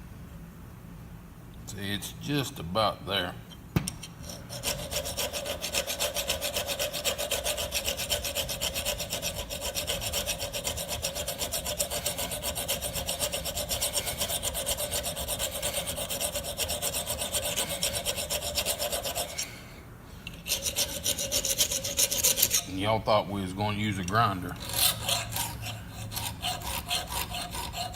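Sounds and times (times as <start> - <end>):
hand file rasping on steel: 4.2 - 19.6, 20.2 - 27.9.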